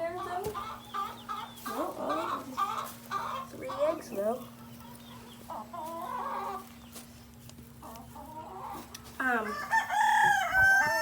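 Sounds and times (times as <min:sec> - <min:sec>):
hens clucking: 0:00.0 - 0:11.0
rooster crowing: 0:09.5 - 0:11.0.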